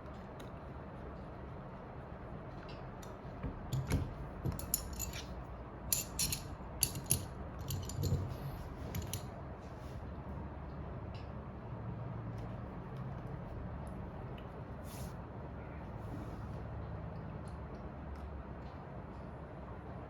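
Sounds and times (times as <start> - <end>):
low steady hum: 0.0 - 20.0
small tools clicking and tapping: 3.0 - 9.3.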